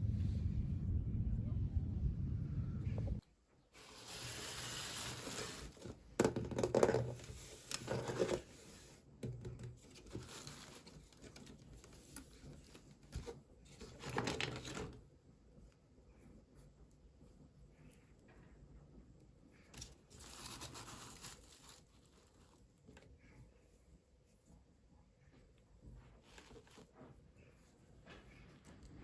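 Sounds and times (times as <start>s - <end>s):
low rumble: 0.0s - 3.2s
plastic packaging crinkling and tearing: 20.1s - 22.4s.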